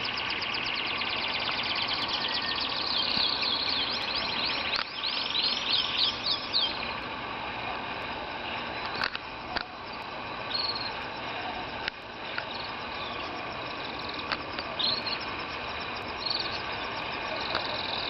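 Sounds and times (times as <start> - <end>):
caged birds chirping and trilling: 0.0 - 18.0.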